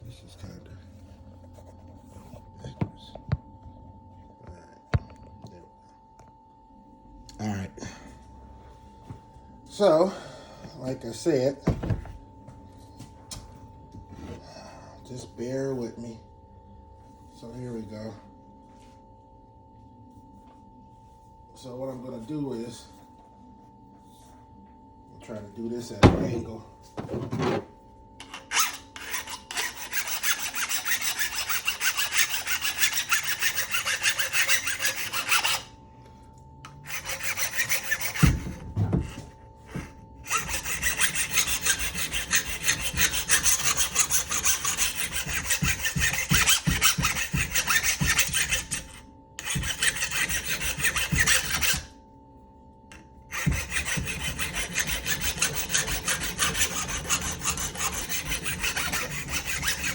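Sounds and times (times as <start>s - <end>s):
sharpener grinding blade: 28.2s - 35.7s, 36.7s - 38.5s, 40.2s - 51.9s, 53.3s - 59.9s.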